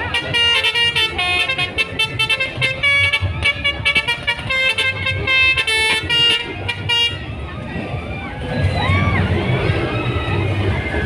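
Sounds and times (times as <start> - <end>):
horn playing a fast tune: 0.0 - 7.4
low rumble: 6.3 - 11.0.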